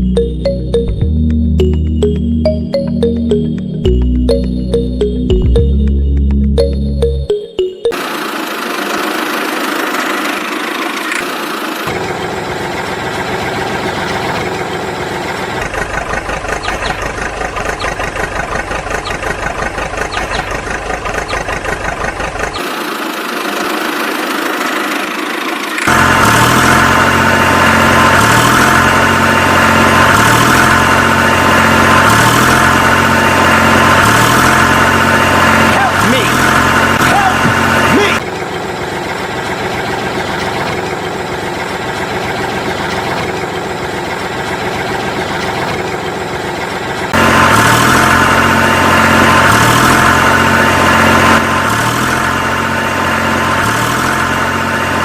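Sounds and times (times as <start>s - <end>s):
tractor engine idling: 0.0s - 55.0s.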